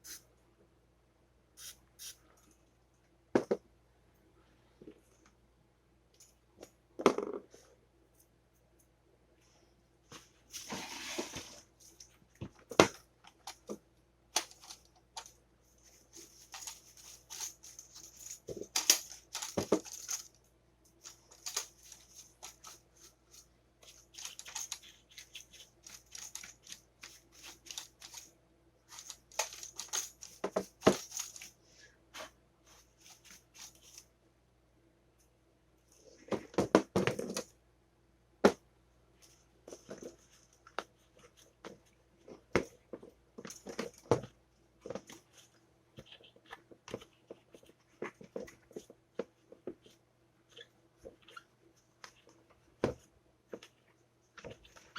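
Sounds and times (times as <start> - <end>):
clicks of small parts handled: 16.4 - 20.4, 21.0 - 22.8, 23.8 - 28.3, 28.9 - 31.5.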